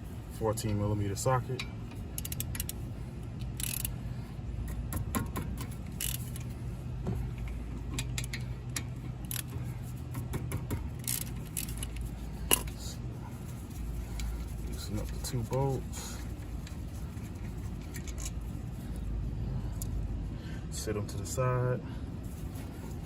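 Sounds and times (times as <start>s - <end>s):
steady low hum: 0.0s - 23.0s
socket wrench clicking: 2.2s - 2.8s, 3.4s - 3.9s, 5.2s - 6.5s, 7.9s - 9.6s, 11.0s - 12.7s.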